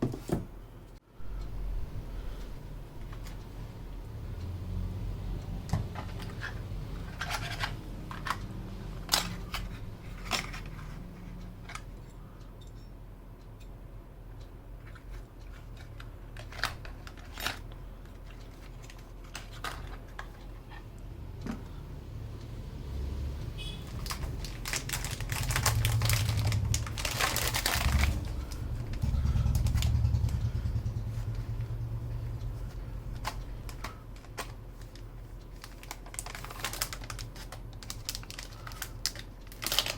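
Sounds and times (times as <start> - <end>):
low rumble: 24.0 - 33.8.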